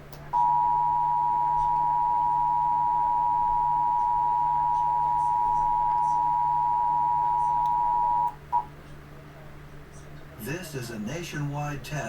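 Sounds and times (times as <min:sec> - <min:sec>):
steady two-tone alarm: 0:00.4 - 0:08.7.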